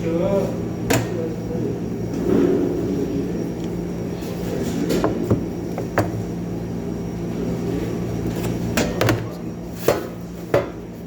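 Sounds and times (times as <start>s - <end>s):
machine hum: 0.0s - 9.8s.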